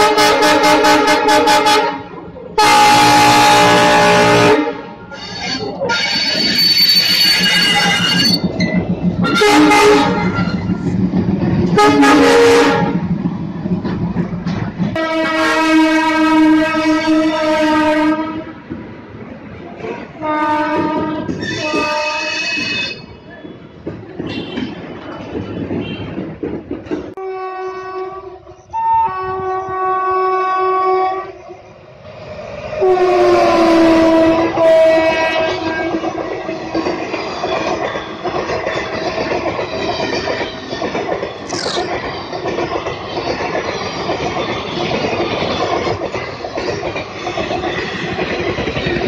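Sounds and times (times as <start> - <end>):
train horn blasts: 0.0 - 8.4, 9.2 - 10.8, 11.8 - 13.0, 15.0 - 18.5, 20.2 - 23.1, 27.2 - 31.4, 32.8 - 36.0
high squeal sliding down: 5.2 - 8.5
train wheels clattering over rail joints: 7.1 - 16.8, 18.1 - 27.2, 34.3 - 49.0.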